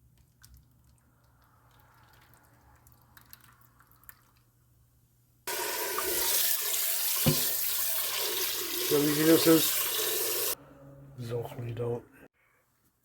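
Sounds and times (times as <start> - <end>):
tap water running into sink: 5.5 - 10.6.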